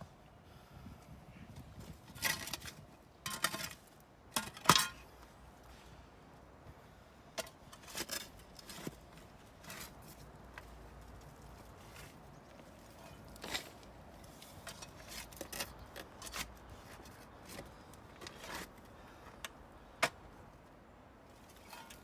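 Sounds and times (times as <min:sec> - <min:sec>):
digging tool scraping soil and stones: 0:01.8 - 0:05.1, 0:07.4 - 0:19.0, 0:21.3 - 0:22.0.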